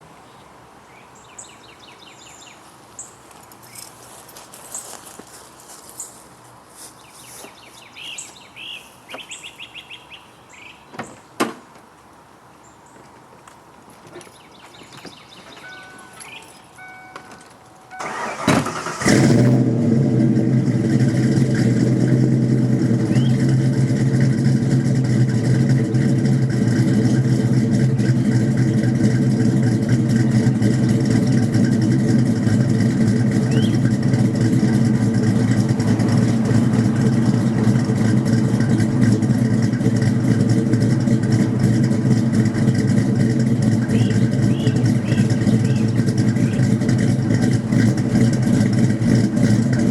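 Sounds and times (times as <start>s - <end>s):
car engine cranking: 14.0s - 49.9s
car engine idling loudly: 15.0s - 49.9s.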